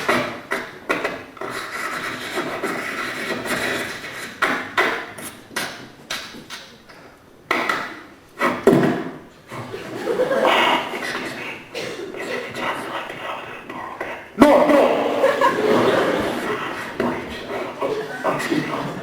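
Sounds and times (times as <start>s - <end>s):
scribbling on paper: 1.4s - 5.0s.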